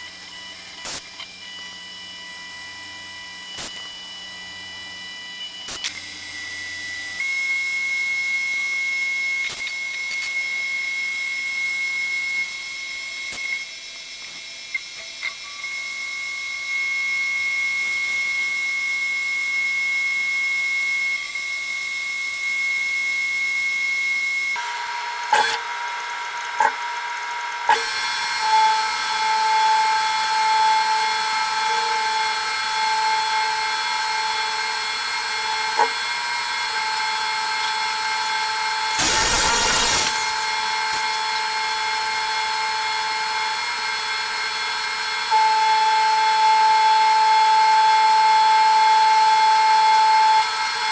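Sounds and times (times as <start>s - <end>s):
milling machine whine: 27.8s - 47.7s.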